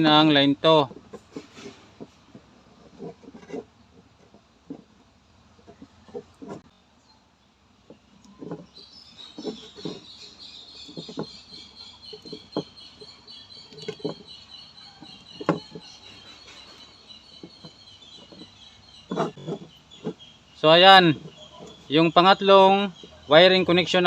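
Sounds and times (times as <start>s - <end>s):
rapid high chirping: 8.7s - 24.0s
wires knocking and clicking: 10.8s - 23.2s.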